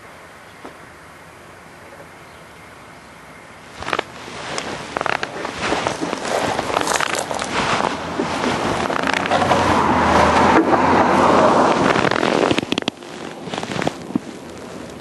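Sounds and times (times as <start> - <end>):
shovel scraping concrete mix: 3.8 - 14.1.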